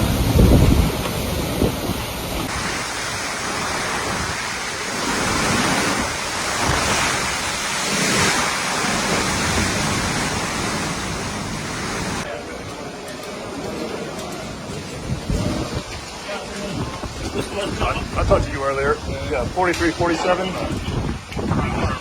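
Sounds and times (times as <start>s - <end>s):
wind buffeting microphone: 0.0s - 12.3s, 14.5s - 22.0s
hurricane wind gusting: 0.0s - 22.0s
rushing water: 0.0s - 22.0s.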